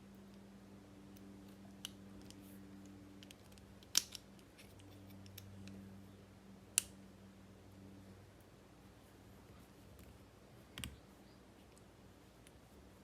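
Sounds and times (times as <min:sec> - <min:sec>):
faint steady hum: 0:00.0 - 0:13.0
small metallic clicks: 0:01.1 - 0:05.8.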